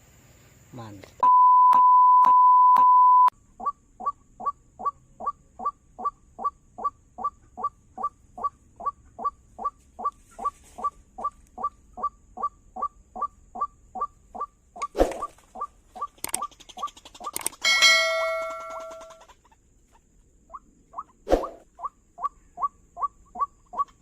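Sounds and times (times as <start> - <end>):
loud steady beep: 1.2 - 3.3
waterhen calls: 3.6 - 24.0.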